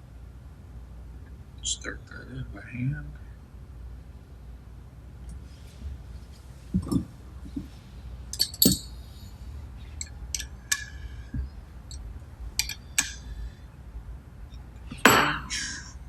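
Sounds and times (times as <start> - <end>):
small metal parts clinking: 8.3 - 9.0, 12.6 - 13.2.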